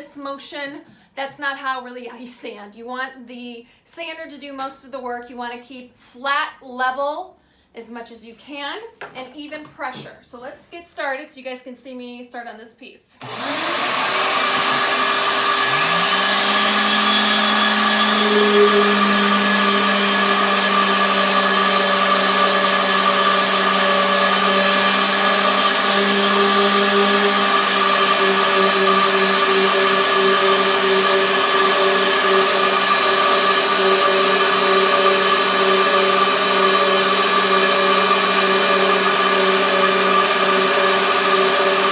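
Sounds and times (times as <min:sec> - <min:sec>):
orbital sander on wood: 0:13.2 - 0:41.9
shop vacuum running: 0:13.2 - 0:41.9.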